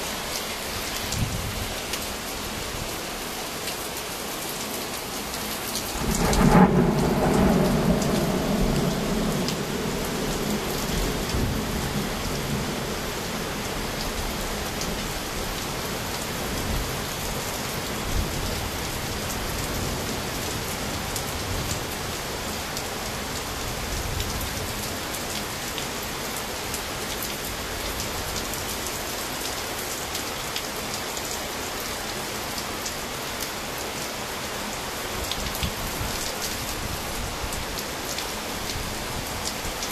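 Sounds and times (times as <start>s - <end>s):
steady rain falling: 0.0s - 39.9s
thunderclap rumbling: 5.9s - 14.3s.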